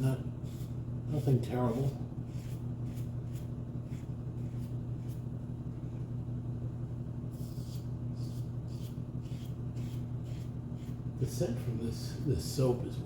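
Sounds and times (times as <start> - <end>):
razor shaving stubble: 1.7 - 5.2, 7.3 - 11.0
laundry machine humming: 3.5 - 7.3, 8.0 - 13.0.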